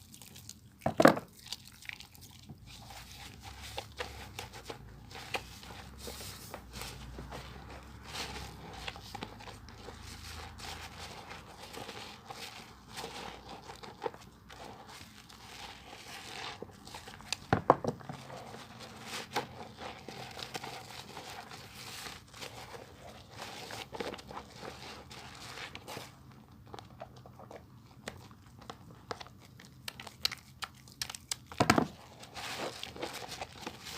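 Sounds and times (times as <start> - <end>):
soap lathering squishes: 0.0 - 6.8, 18.1 - 33.9.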